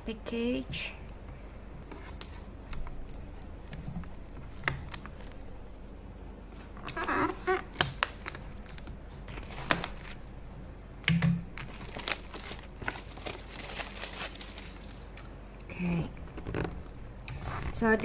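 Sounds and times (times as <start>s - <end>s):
packaging rustling and tearing: 1.9s - 5.8s, 6.5s - 10.3s, 11.5s - 15.4s.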